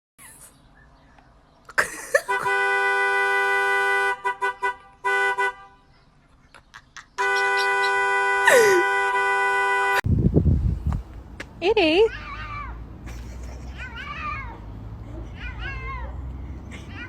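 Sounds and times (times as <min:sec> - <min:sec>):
car horn honking: 0:02.2 - 0:05.9, 0:07.2 - 0:10.0.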